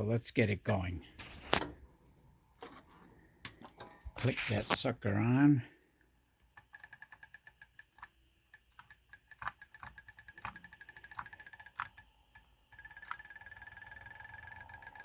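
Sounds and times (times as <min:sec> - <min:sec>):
pulse motor ticking and humming: 0:12.7 - 0:15.0.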